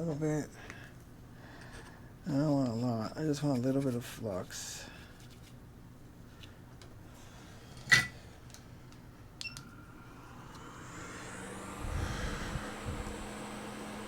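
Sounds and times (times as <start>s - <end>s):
low hum: 8.5s - 14.0s
hot air blower hissing: 9.7s - 14.0s.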